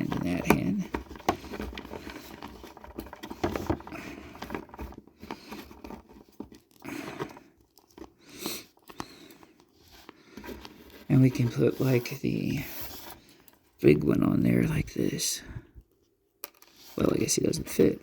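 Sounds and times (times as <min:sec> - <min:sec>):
soft rustling: 0:09.4 - 0:13.8.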